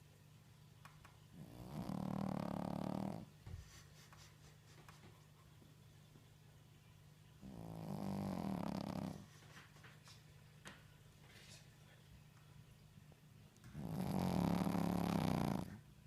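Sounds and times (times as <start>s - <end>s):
dog snoring: 1.3s - 3.3s, 7.4s - 9.3s, 13.6s - 15.9s.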